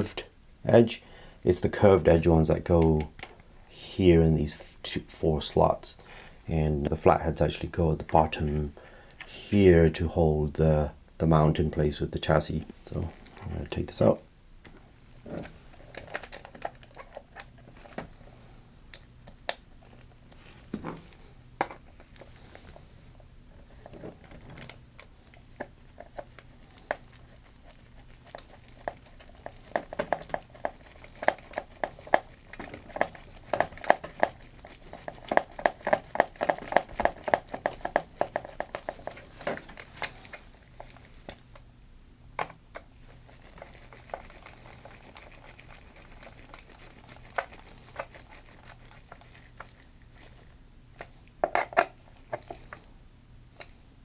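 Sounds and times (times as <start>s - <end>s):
small metal parts clicking and rattling: 15.4s - 17.6s, 25.6s - 41.1s.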